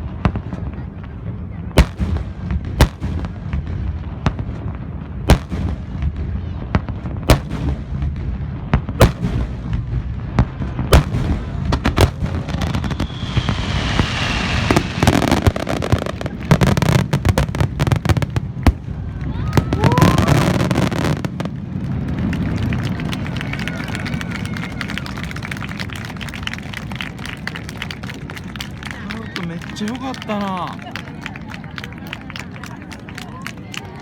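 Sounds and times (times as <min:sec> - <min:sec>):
hissing crackling fireworks: 0:00.0 - 0:34.0
low rumble of booms: 0:05.4 - 0:19.8
firework shells bursting: 0:11.0 - 0:18.6
falling whistle: 0:12.5 - 0:16.2.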